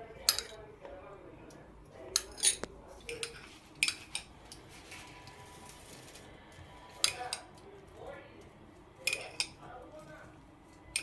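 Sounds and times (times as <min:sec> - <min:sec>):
metal spoon clinking on pot: 0:00.2 - 0:00.7, 0:02.1 - 0:04.3, 0:07.0 - 0:07.6, 0:09.0 - 0:09.6, 0:10.8 - 0:11.0.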